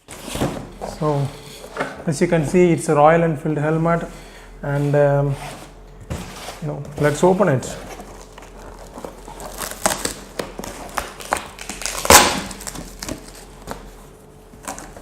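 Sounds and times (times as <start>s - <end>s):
packaging rustling and crinkling: 5.6s - 15.0s.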